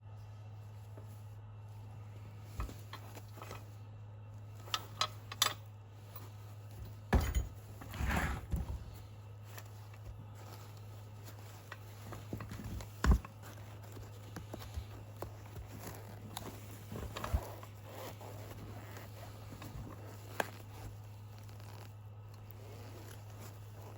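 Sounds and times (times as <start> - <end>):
steady low hum: 0.0 - 23.9
handling knocks and rattles: 2.4 - 3.8, 4.5 - 21.8.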